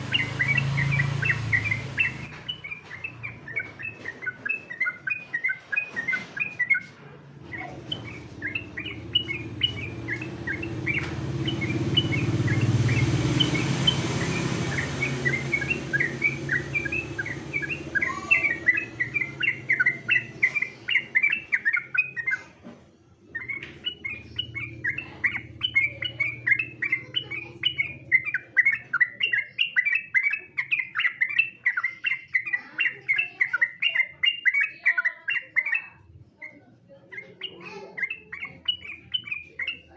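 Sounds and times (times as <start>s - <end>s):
bird singing bubbling chirps: 0.0s - 6.9s, 7.5s - 22.4s, 23.3s - 36.5s, 37.1s - 39.9s
broad rushing noise: 7.8s - 20.2s.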